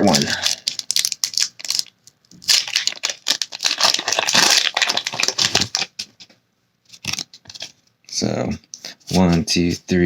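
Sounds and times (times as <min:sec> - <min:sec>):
foil wrapper tearing and crinkling: 0:00.0 - 0:06.0.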